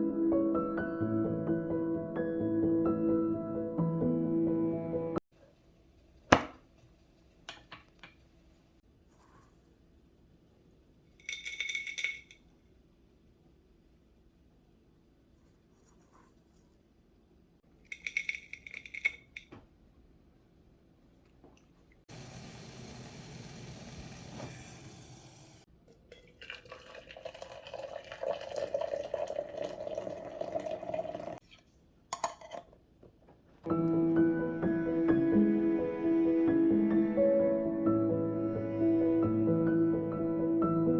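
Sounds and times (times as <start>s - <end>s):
tap water running: 22.1s - 31.4s
dishes clinking: 32.1s - 32.8s.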